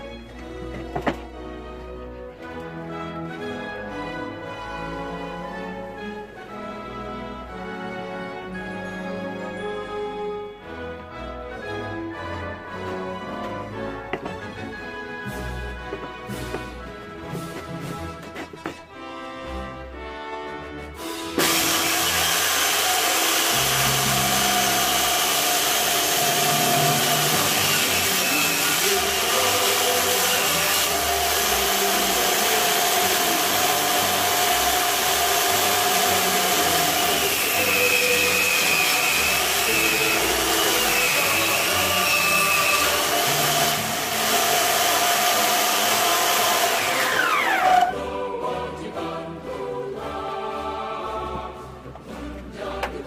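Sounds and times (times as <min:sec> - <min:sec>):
background music: 0:00.0 - 0:53.0
power tool motor whining: 0:21.3 - 0:47.9.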